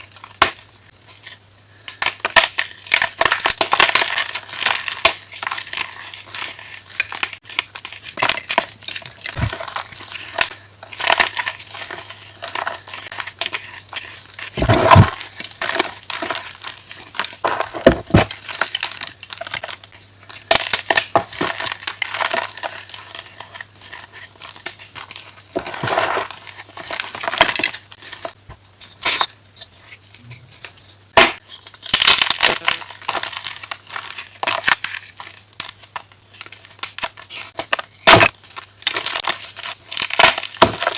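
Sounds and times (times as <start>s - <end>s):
chalk crunching and crumbling: 0.7s - 28.4s.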